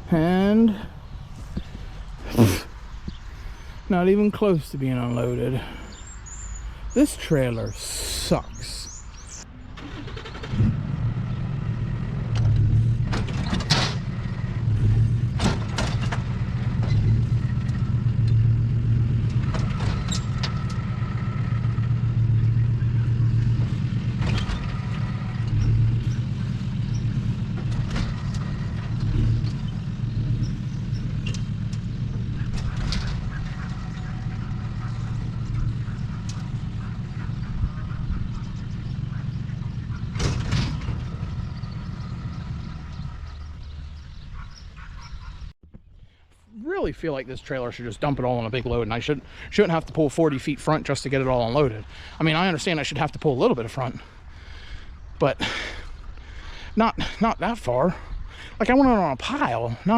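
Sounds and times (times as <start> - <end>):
truck engine drone: 0.0 - 45.6, 46.6 - 59.9
trailer knocks and clunks: 11.8 - 44.1.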